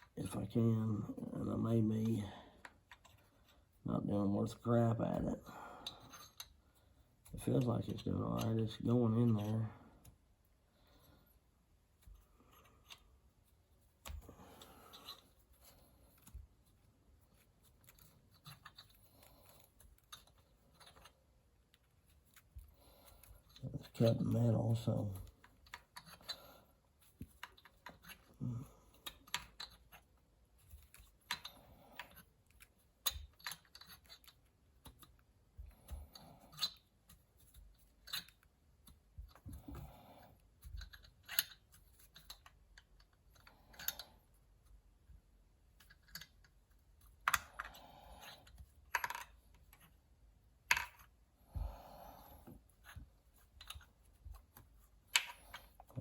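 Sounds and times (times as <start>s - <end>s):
thread tap clicking and scraping metal: 25.2s - 39.9s.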